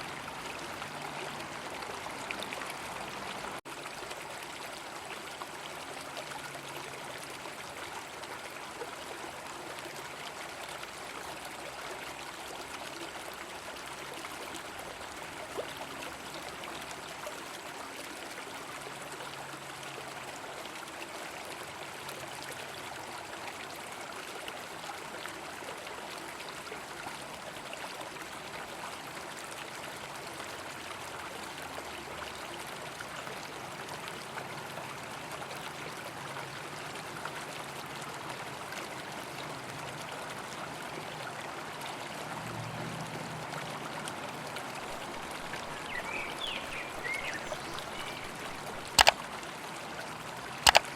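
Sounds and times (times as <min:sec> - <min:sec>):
river flowing: 0:00.0 - 0:50.9
sharp click: 0:46.9 - 0:49.2, 0:50.7 - 0:50.9.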